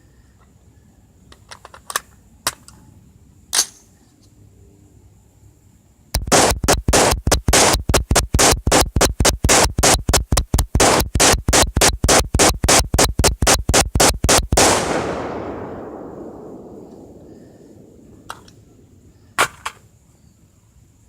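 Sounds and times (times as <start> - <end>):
gunshot echo: 6.2 - 10.0, 10.8 - 19.6
rifle shots: 6.2 - 19.6.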